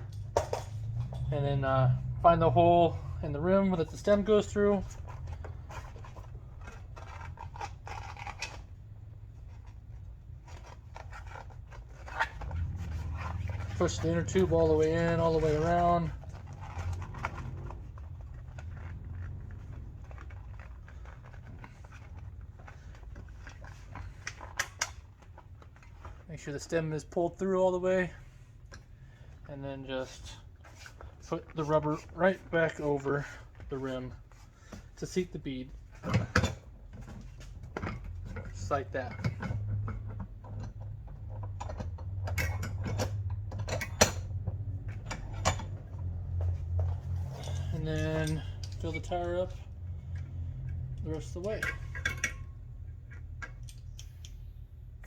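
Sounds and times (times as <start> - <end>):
low steady hum: 0.0 - 55.0
rubber rubbing: 3.5 - 26.2.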